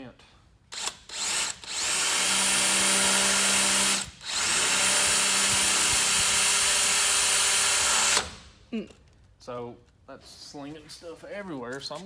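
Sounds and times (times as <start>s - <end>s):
power drill hole saw whining: 0.7s - 8.5s.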